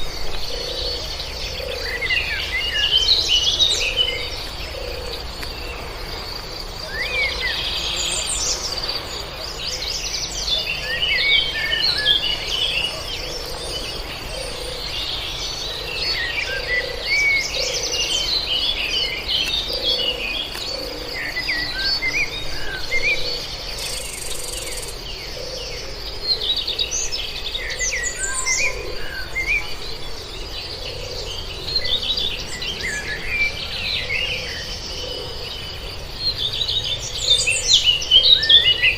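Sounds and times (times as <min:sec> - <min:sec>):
birds chirping and singing: 0:00.0 - 0:38.9
high-pitched insect drone: 0:19.8 - 0:26.0.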